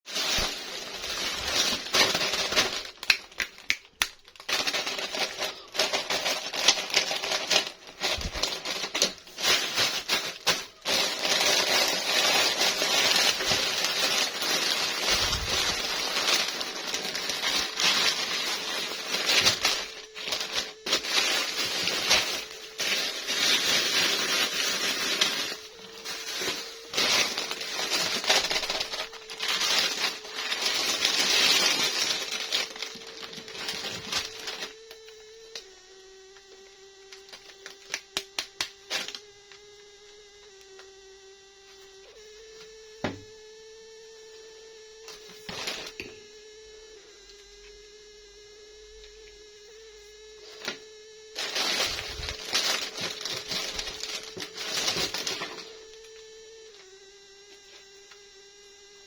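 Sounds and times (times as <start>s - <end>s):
plastic wrap crinkling: 0.1s - 35.7s, 36.9s - 39.6s, 50.4s - 56.9s.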